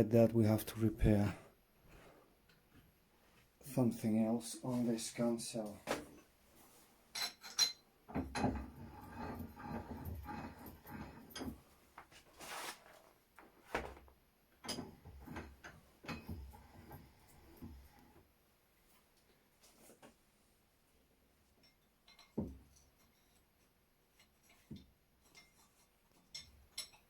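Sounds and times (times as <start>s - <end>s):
rubbing and scraping: 8.4s - 13.1s.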